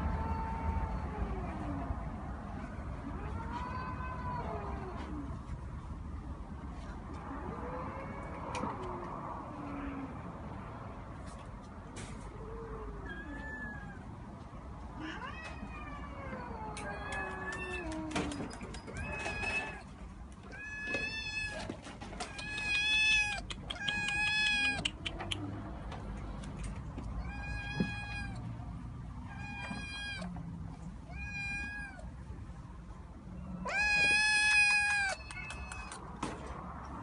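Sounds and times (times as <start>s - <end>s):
cat meowing: 3.0s - 5.3s, 12.7s - 14.1s, 15.0s - 18.3s, 18.9s - 25.2s, 27.2s - 28.5s, 29.3s - 30.4s, 31.1s - 32.1s, 33.6s - 36.1s.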